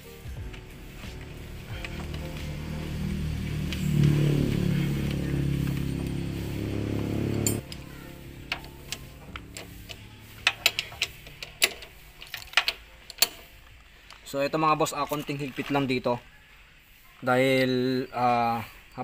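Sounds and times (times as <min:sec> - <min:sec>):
loud steady drone: 0:00.0 - 0:11.9
hand tools clicking on metal: 0:00.4 - 0:16.0.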